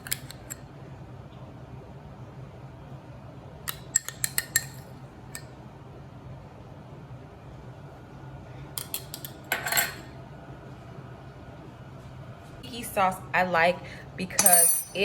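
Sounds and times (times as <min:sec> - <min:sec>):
spoon clinking against dish: 0:14.4 - 0:15.0.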